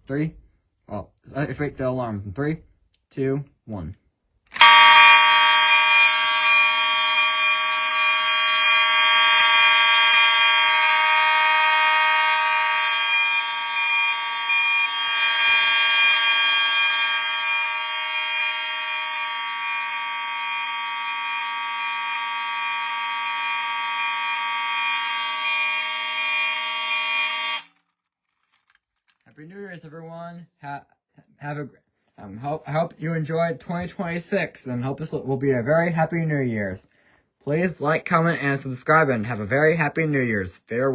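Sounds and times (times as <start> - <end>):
blend of fire alarm tones: 4.5 - 27.8
fire alarm bell ringing: 4.5 - 28.7.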